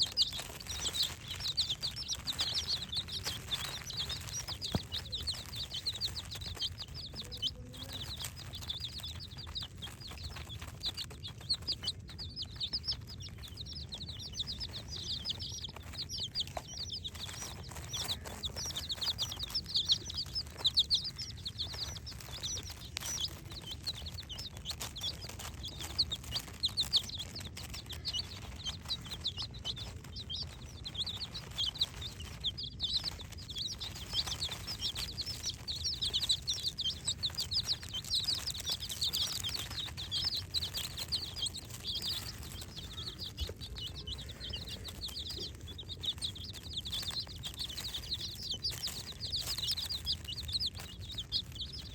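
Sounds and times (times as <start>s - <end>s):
chicks peeping: 0.0s - 51.9s.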